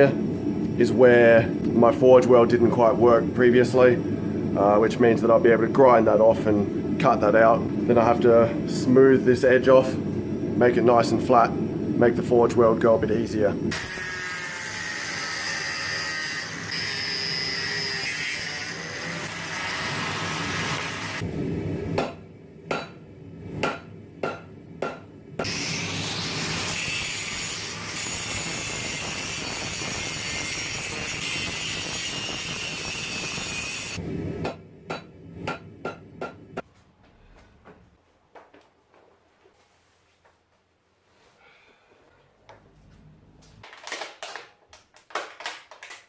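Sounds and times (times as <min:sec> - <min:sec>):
angle grinder on steel: 0:13.7 - 0:21.2, 0:25.4 - 0:34.0.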